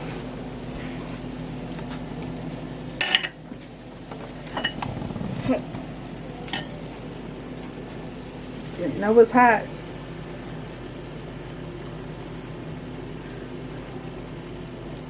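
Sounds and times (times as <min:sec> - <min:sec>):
steady low hum: 0:00.0 - 0:03.2, 0:04.4 - 0:15.0
spoon and dishes clinking: 0:06.5 - 0:06.8.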